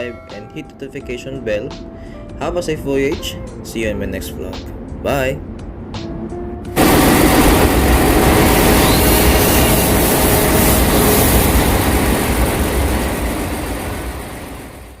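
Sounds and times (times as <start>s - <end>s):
heavy machinery rumbling: 6.8s - 15.0s.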